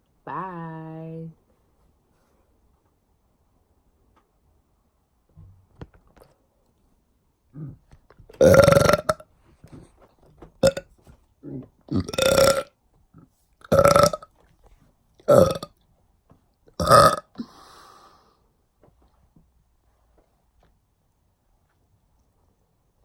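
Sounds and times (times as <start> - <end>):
woman burping loudly: 8.4 - 9.2, 10.6 - 10.8, 11.9 - 12.7, 13.7 - 14.3, 15.3 - 15.7, 16.7 - 17.5.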